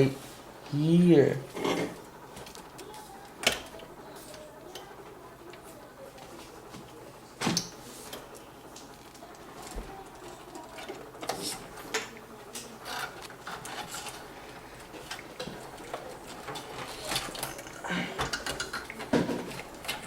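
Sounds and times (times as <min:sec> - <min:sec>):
cables and connectors clicking: 0:14.8 - 0:20.0.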